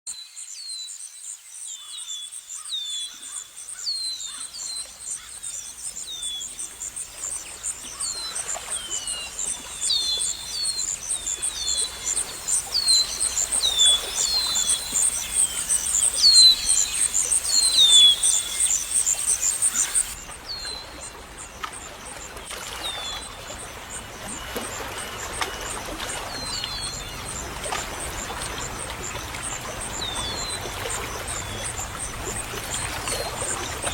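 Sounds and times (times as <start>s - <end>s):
birds chirping: 1.8s - 20.2s
trickling water: 3.3s - 33.9s.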